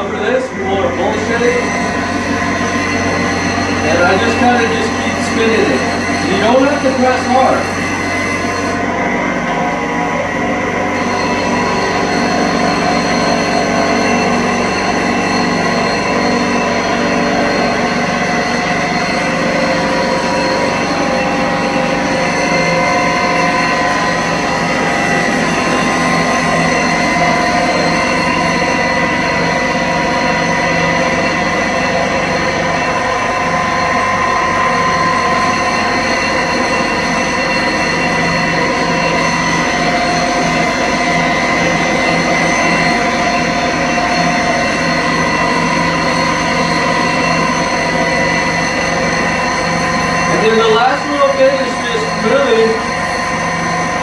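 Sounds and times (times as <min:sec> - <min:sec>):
grinding hiss: 0:00.0 - 0:08.9
grinding machine motor whine: 0:00.0 - 0:54.0.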